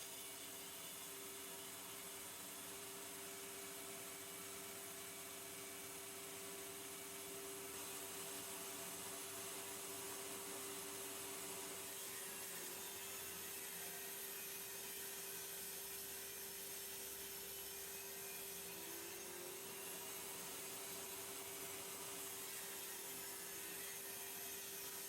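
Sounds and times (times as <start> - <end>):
table saw whining: 7.6 - 25.0.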